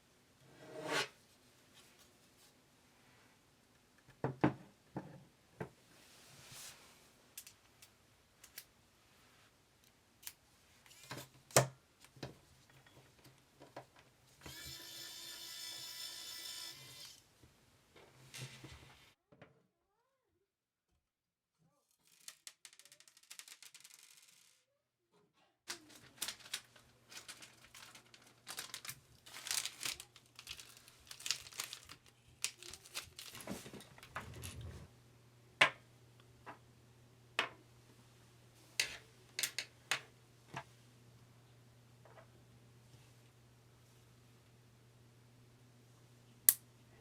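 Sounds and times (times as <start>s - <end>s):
packaging crinkling and rustling: 25.7s - 34.6s.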